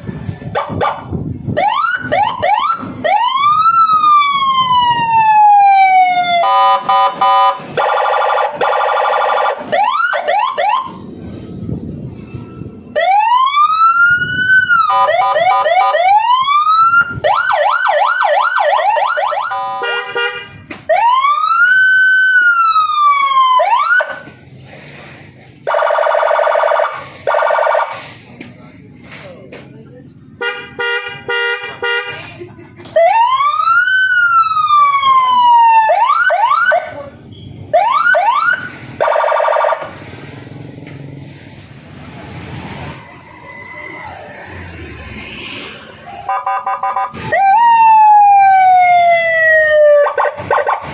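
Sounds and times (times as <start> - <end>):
electronic police siren: 1.6 - 11.0, 13.0 - 19.8, 20.9 - 24.2, 25.7 - 28.0, 33.0 - 36.9, 37.7 - 40.0, 46.1 - 50.9.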